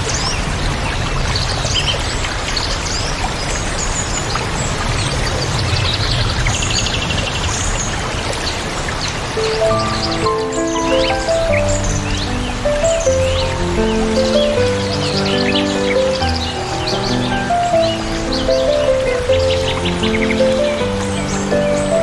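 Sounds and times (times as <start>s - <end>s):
waterfall rushing: 0.1s - 22.0s
birds chirping and whistling: 9.4s - 22.0s.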